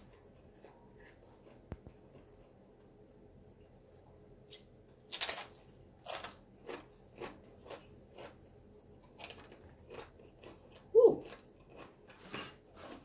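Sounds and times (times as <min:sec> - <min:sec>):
chewing crunches: 0:04.5 - 0:13.0.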